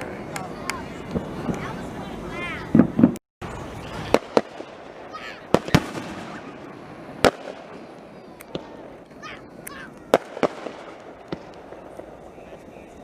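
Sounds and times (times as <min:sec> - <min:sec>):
fireworks bangs: 0:00.0 - 0:13.0.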